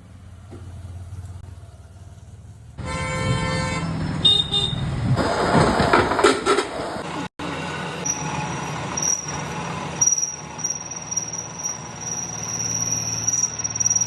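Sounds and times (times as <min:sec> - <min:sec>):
power hammer squealing: 0:07.9 - 0:14.0.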